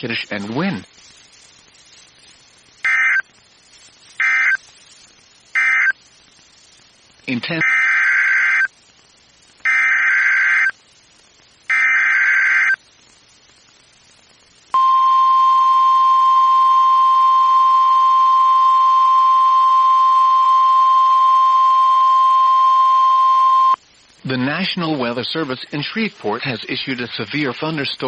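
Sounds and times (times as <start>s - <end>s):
buzzy digital data bursts: 0.0s - 13.3s
steady warning alarm tone: 4.2s - 4.6s, 5.6s - 5.9s.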